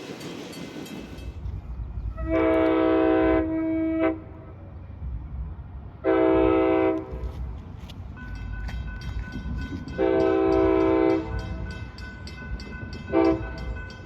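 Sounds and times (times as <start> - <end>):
train rumbling: 0.0 - 14.0
locomotive air horn blasts: 2.2 - 4.5, 6.0 - 7.3, 10.0 - 11.4, 13.1 - 13.7.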